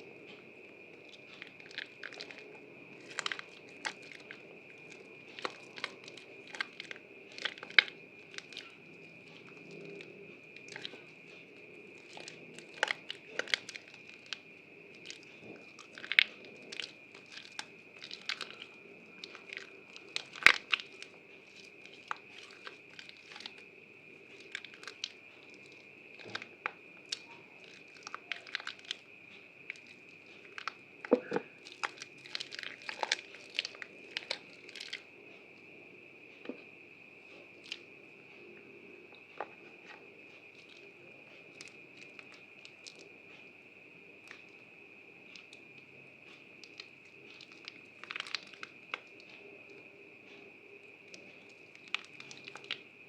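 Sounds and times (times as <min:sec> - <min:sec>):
soap crackling and snapping: 0:01.0 - 0:23.7, 0:24.3 - 0:29.1, 0:29.7 - 0:35.1.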